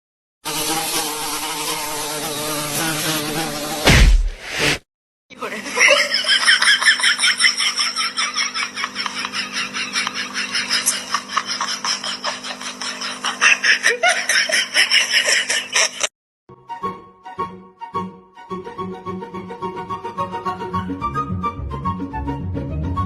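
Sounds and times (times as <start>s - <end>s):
hearty laughter: 5.5s - 16.1s.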